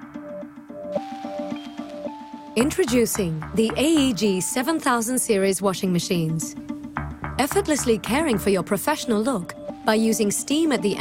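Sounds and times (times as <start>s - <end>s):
light electronic music: 0.0s - 11.0s.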